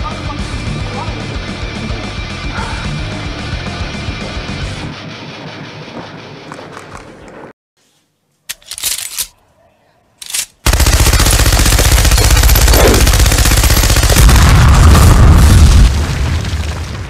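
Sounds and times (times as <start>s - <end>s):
automatic gunfire: 10.2s - 14.6s.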